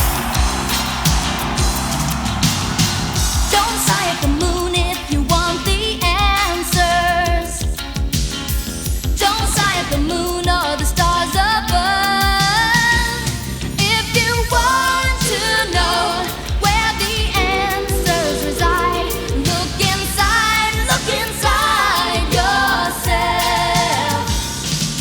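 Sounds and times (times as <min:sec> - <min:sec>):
steady drum beat: 0:00.0 - 0:25.0
person singing: 0:03.5 - 0:07.6, 0:14.0 - 0:24.6.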